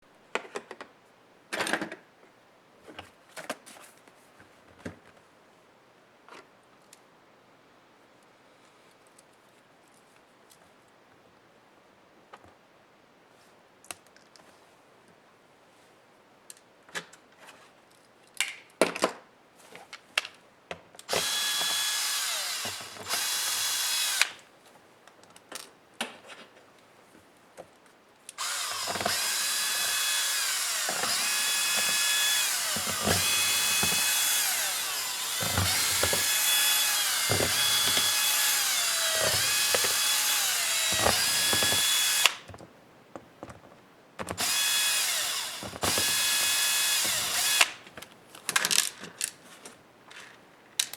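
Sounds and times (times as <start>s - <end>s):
electric screwdriver whining: 21.1s - 24.4s, 28.4s - 42.5s, 44.3s - 47.8s.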